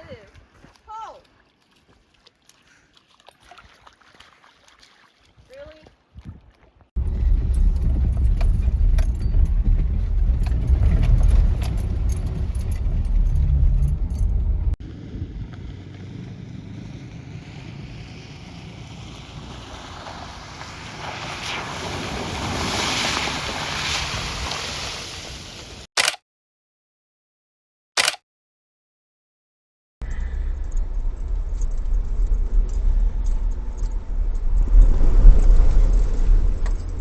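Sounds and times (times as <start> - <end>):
mud ticking against body: 0.0 - 6.7
engine and tyre rumble: 7.0 - 25.8, 30.0 - 37.0
water spraying: 19.1 - 25.9.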